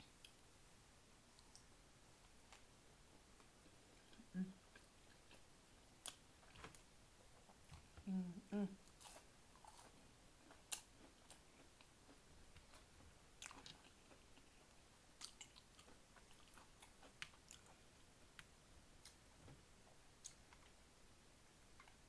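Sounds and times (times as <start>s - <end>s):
person chewing food: 8.8s - 19.2s.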